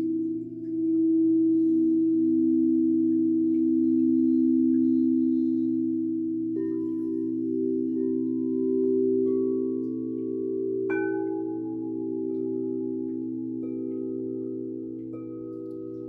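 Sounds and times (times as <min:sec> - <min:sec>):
singing bowls ringing: 0:00.0 - 0:16.0.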